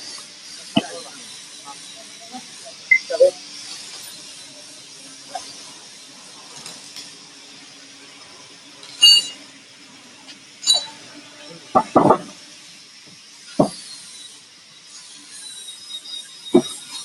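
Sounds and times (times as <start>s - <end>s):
ringing metallic clinks: 9.0s - 9.4s, 10.6s - 11.0s.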